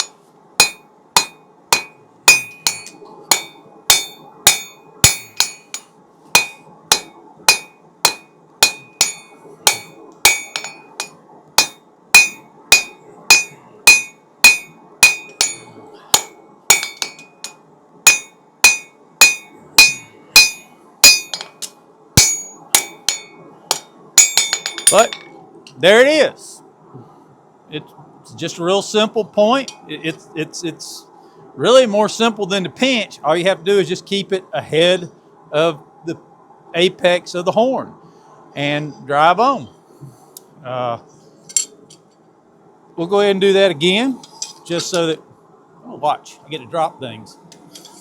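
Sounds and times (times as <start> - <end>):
hammer striking hot steel on anvil: 0.0 - 25.3.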